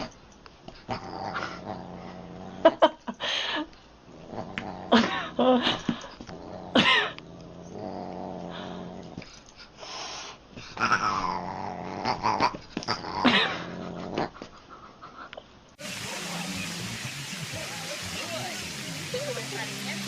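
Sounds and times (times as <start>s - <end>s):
animal growling low: 0.9s - 2.7s, 4.1s - 5.5s, 6.3s - 9.2s, 10.8s - 14.3s.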